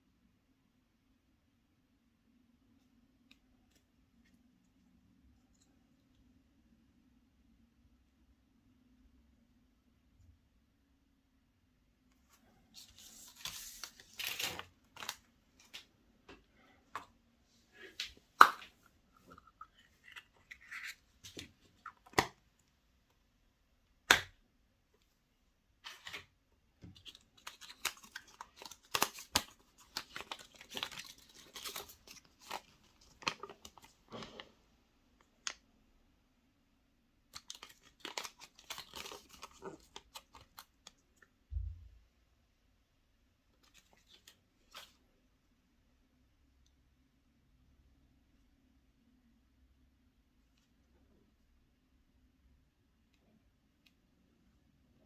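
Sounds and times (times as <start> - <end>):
foil wrappers crinkling and tearing: 27.1 - 33.6, 37.4 - 40.6.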